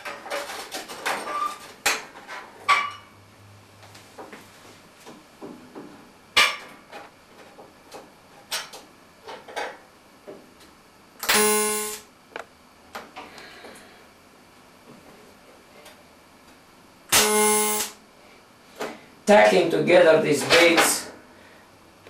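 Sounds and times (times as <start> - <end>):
welding buzz: 11.2 - 12.4, 17.1 - 18.0.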